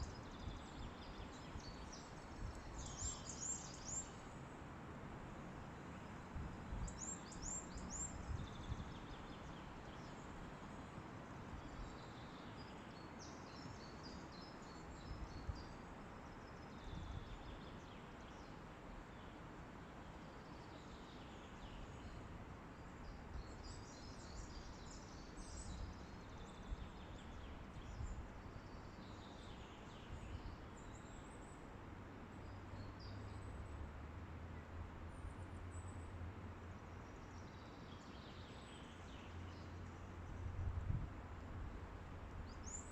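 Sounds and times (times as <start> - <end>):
small birds chirping: 0.0 - 4.3, 5.9 - 10.4, 22.8 - 31.6, 36.8 - 41.7
wind rushing through trees: 0.0 - 42.9.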